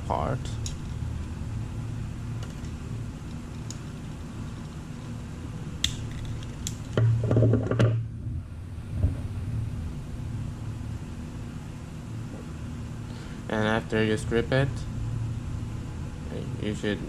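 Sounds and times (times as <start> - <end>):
insulation rustling: 0.0 - 11.2
steady low hum: 0.0 - 17.0
wire stripper clicking: 5.8 - 7.1.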